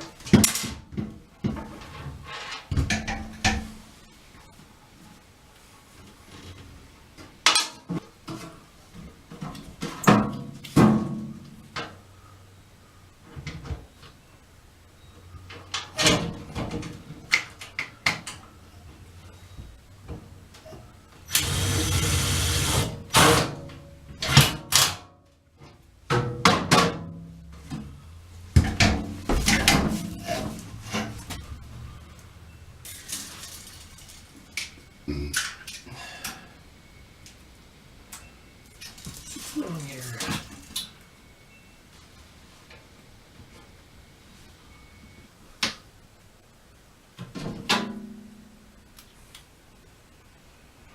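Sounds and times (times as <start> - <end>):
knocks and clatter of metal hardware: 0.2 - 3.8, 7.4 - 11.9, 28.6 - 31.4.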